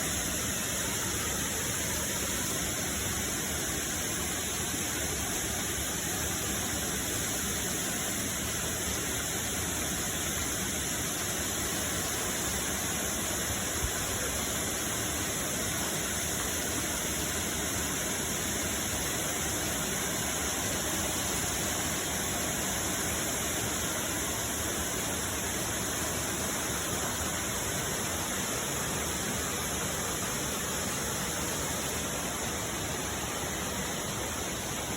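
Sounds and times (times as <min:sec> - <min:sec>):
waterfall rushing: 0:08.2 - 0:34.9.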